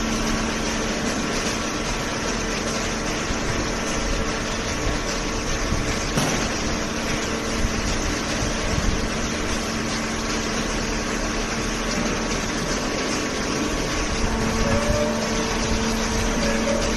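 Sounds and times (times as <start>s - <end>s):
baler machine humming: 0.0s - 16.9s.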